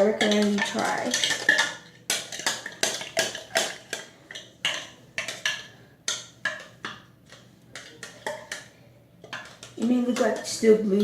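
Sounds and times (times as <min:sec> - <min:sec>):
spoon clinking against bowl: 0:07.8 - 0:10.6.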